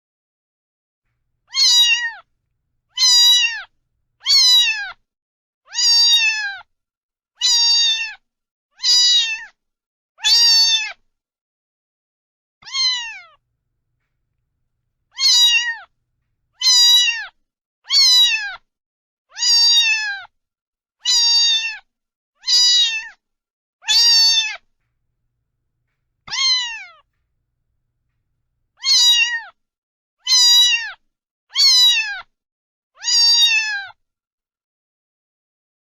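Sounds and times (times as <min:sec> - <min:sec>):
cat meowing: 0:01.5 - 0:02.2, 0:02.9 - 0:04.9, 0:05.7 - 0:06.4, 0:12.6 - 0:13.4, 0:15.1 - 0:15.9, 0:16.6 - 0:17.3, 0:28.8 - 0:29.4.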